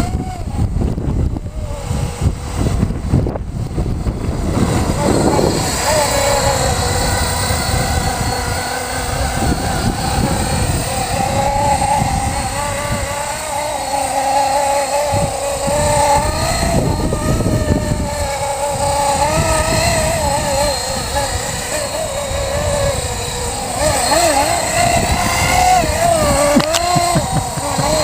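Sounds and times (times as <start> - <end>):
model helicopter motor whine: 0.0 - 28.0
wind rumble on microphone: 0.0 - 28.0.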